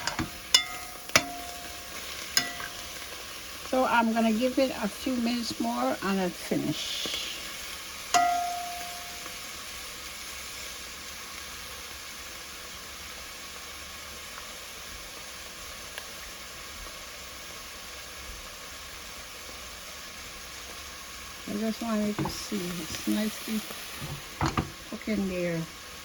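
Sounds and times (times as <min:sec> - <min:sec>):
food sizzling in a pan: 0:00.0 - 0:26.0
ringing metallic tone: 0:00.5 - 0:02.8, 0:08.2 - 0:09.5.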